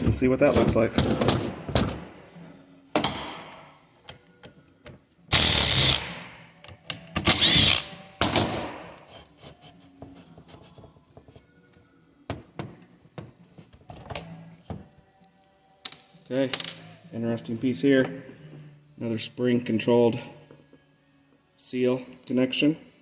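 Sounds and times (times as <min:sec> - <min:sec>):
cordless drill running: 0:05.4 - 0:06.1, 0:07.3 - 0:07.9.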